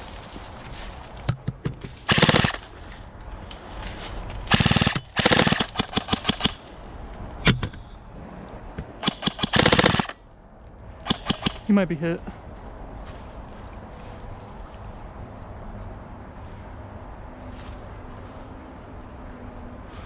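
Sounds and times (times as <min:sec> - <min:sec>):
airsoft gun firing bursts: 0:02.0 - 0:02.7, 0:04.5 - 0:06.7, 0:08.8 - 0:10.2, 0:11.0 - 0:12.0.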